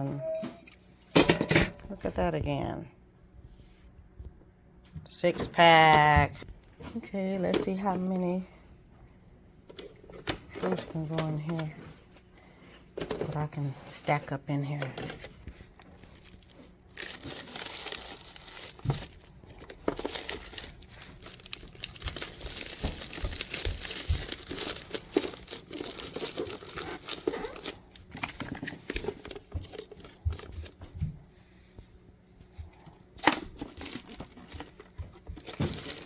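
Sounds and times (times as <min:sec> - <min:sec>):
crinkling and rustling of packaging: 0:09.6 - 0:31.2, 0:32.4 - 0:36.0.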